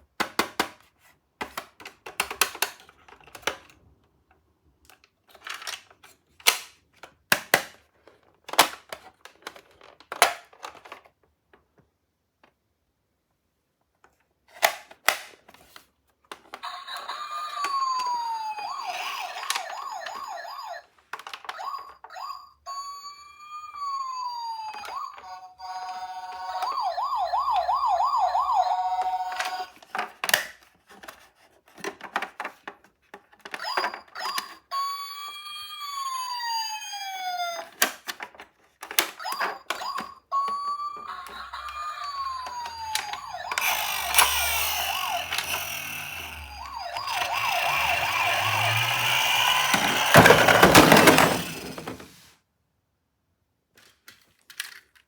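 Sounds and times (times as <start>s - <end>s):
toy ambulance siren: 16.6s - 29.8s, 33.4s - 38.1s, 39.0s - 52.0s.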